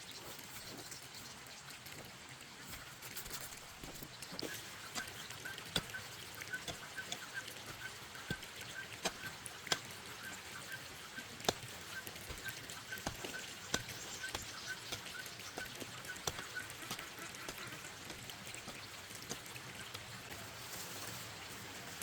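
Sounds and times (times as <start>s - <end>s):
sharp clicks and knocks: 11.4s - 20.1s.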